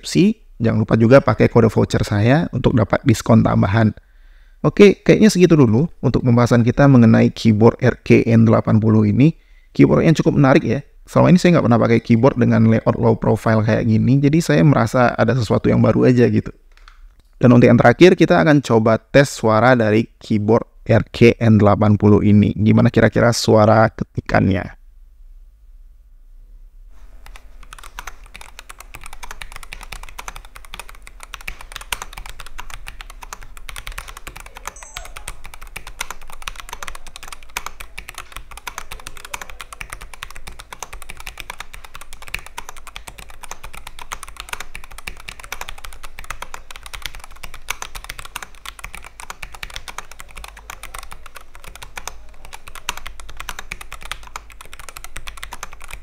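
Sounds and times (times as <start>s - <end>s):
mechanical keyboard typing: 27.2s - 56.0s.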